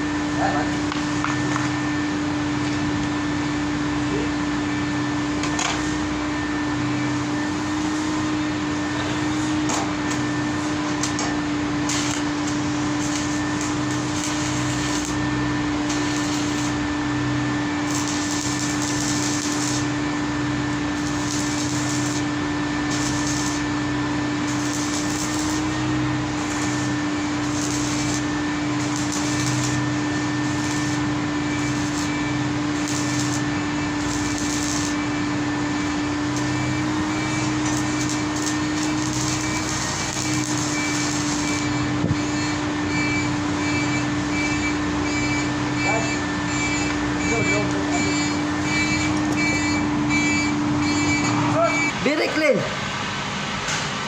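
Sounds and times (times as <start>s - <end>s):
machine motor humming: 5.8s - 43.0s.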